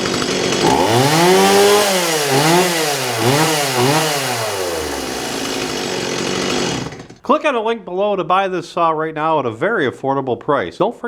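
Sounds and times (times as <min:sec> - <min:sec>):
chainsaw engine revving: 0:00.0 - 0:07.3.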